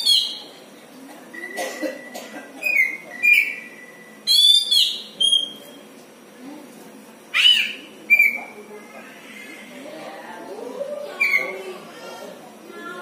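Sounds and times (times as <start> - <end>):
bird whistled notes: 2.7 - 5.8.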